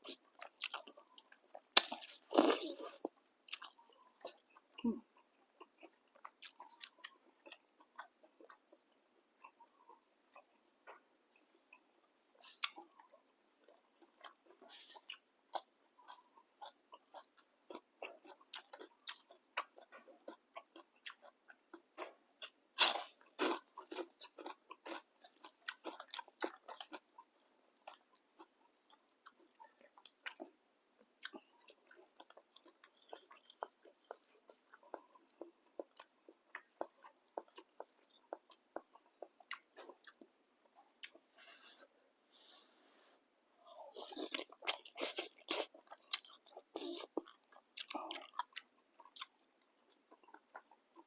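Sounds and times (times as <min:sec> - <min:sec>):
chewing and mouth smacks: 0:31.2 - 0:41.3, 0:43.9 - 0:51.0.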